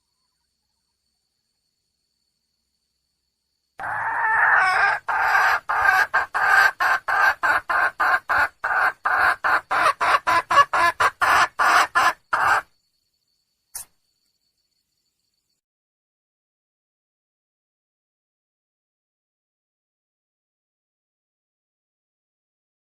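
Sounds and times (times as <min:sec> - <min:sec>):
hen clucking: 0:03.8 - 0:12.7.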